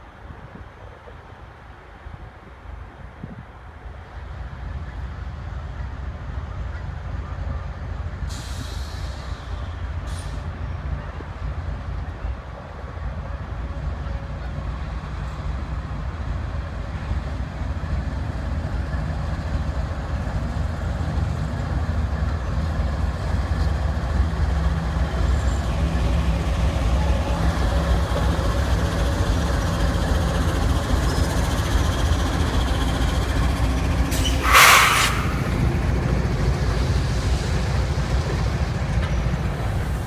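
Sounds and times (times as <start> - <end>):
train locomotive rumbling: 0.0 - 40.0
short loud hiss: 34.1 - 35.9.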